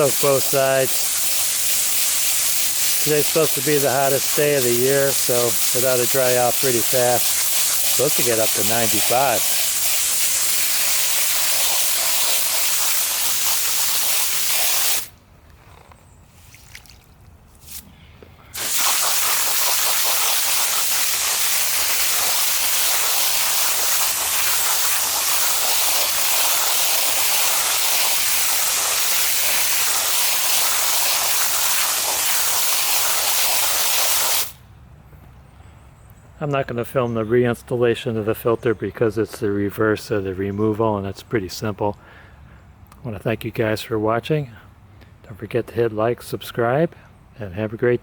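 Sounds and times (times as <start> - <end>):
hose spraying water: 0.0 - 15.1, 18.6 - 34.6.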